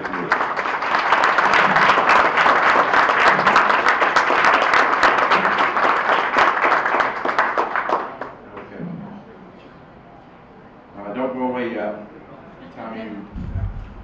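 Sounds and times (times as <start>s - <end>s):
audience applauding: 0.0s - 8.4s.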